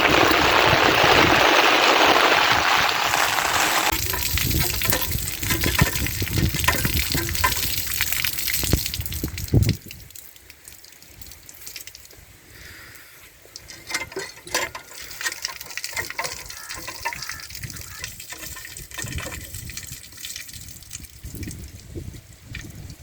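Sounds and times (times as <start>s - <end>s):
heavy rain: 0.0s - 9.5s
water dripping and splashing: 0.0s - 12.5s, 13.3s - 23.0s.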